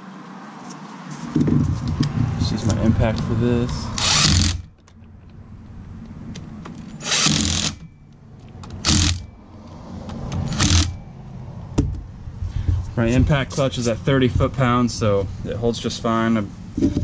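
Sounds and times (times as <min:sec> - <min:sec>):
cordless impact wrench running: 0:03.9 - 0:04.7, 0:07.0 - 0:07.8, 0:08.8 - 0:09.3, 0:10.5 - 0:11.0.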